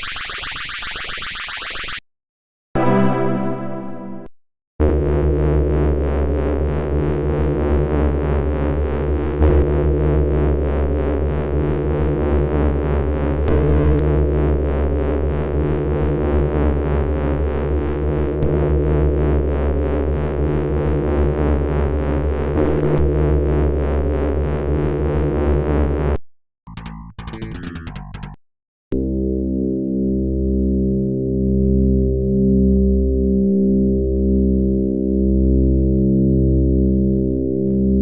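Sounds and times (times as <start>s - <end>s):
pulsing synthesizer drone: 29.0s - 38.0s.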